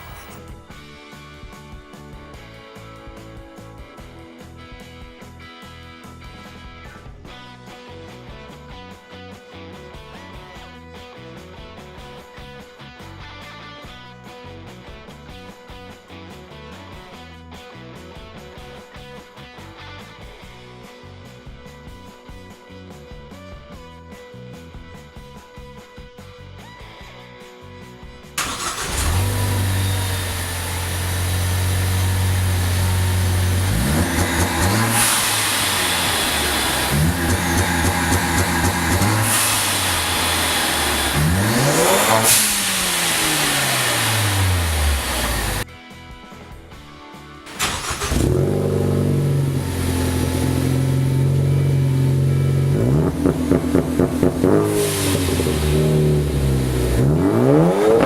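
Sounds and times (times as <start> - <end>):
car engine idling and revving: 0.0 - 1.0, 28.4 - 45.6, 47.5 - 58.0.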